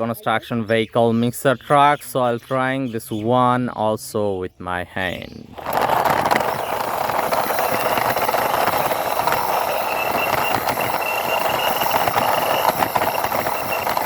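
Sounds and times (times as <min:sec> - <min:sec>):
toy plastic wheels rolling: 0:05.5 - 0:14.0.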